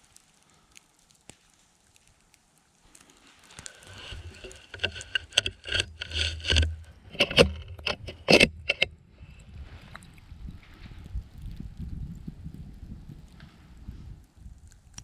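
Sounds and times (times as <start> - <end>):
rustling clatter: 3.6 - 8.9
wind rumble on microphone: 6.8 - 15.0.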